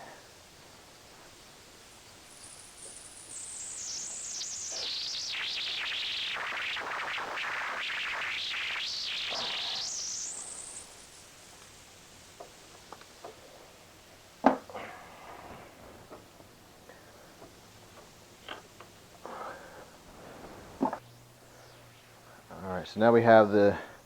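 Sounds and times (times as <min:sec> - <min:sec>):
oil spray hissing: 0:01.2 - 0:14.3
faint ticks: 0:09.3 - 0:13.8.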